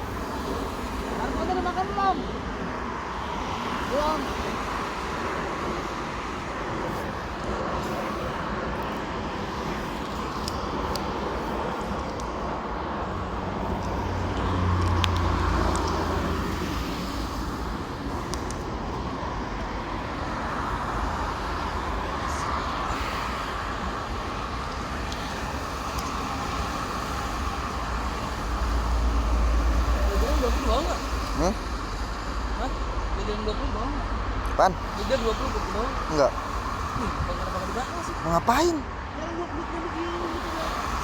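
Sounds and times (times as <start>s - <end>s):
road traffic noise: 0.0s - 41.0s
vehicle passing: 12.8s - 41.0s.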